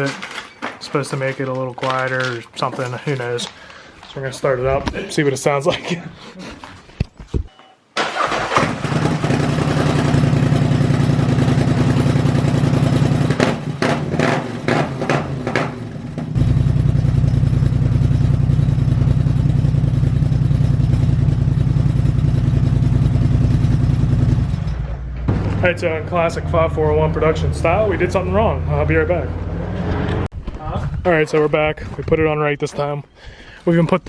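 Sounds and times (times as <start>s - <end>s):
atv engine starting and running: 8.0s - 30.3s.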